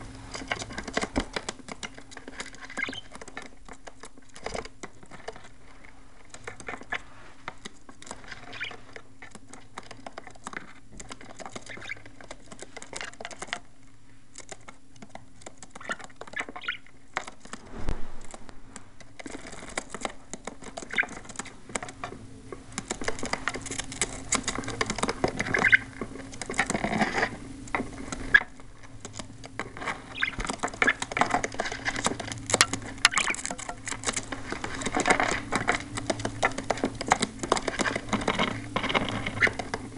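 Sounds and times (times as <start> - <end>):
budgies clicking and scratching: 0.0 - 17.6, 19.1 - 39.9
steady low hum: 17.3 - 39.9.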